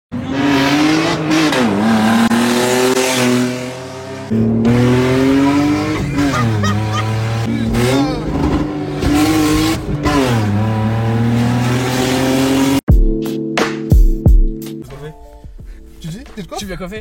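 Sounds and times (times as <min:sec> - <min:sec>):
loud car engine revving: 0:00.1 - 0:12.9.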